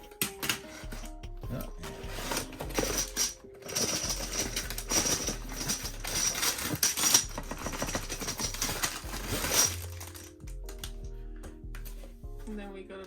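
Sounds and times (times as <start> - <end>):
plastic dominoes rattling and clicking: 2.1 - 10.8.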